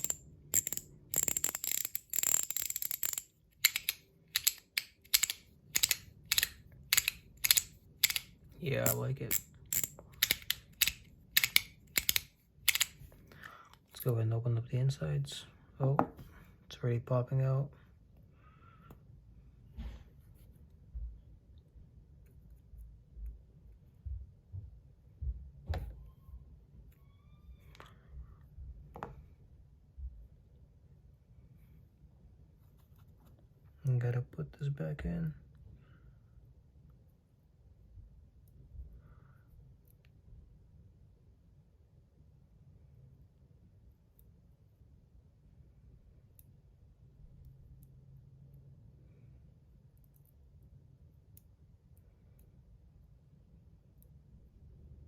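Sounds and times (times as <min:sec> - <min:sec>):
fidget coin clicking: 0:00.0 - 0:13.0.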